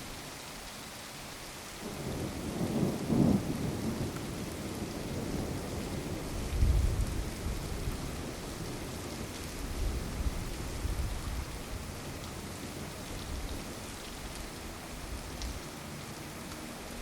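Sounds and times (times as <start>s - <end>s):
steady rain falling: 0.0s - 17.0s
thunder rumbles: 1.8s - 11.6s.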